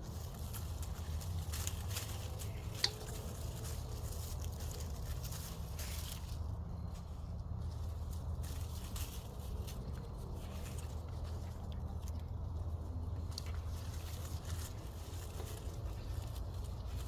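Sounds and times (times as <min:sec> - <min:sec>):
hands rustling through soil: 0:00.0 - 0:17.0.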